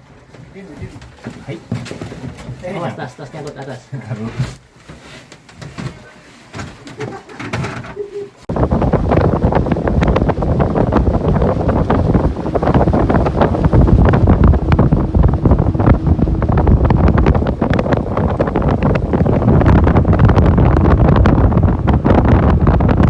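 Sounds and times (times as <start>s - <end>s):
wind buffeting microphone: 7.0s - 23.0s
hull slapping waves: 8.4s - 23.0s
outboard motors running: 8.6s - 21.5s.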